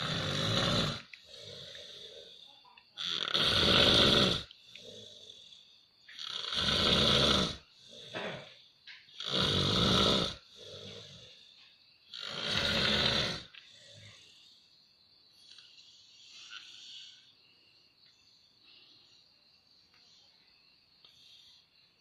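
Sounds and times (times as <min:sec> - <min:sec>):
person snoring heavily: 0:00.0 - 0:14.4
soft breath: 0:13.5 - 0:22.0.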